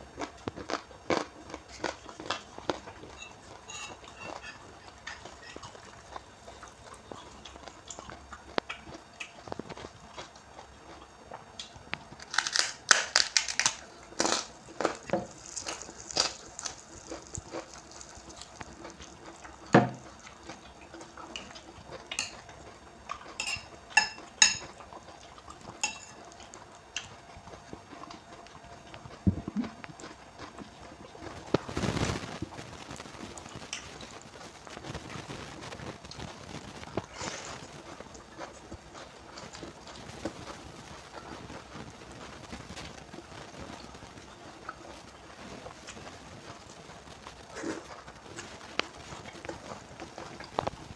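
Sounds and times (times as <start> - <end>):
wet chewing of noodles: 0.0 - 50.9
utensils clinking against bowl: 3.1 - 5.7, 23.4 - 24.8, 25.8 - 26.2.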